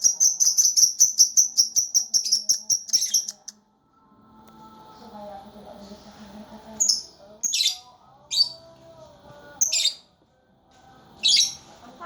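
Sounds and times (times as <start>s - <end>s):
lovebird shrill chirping: 0.0s - 3.5s, 6.8s - 8.6s, 9.6s - 10.0s, 11.2s - 11.6s.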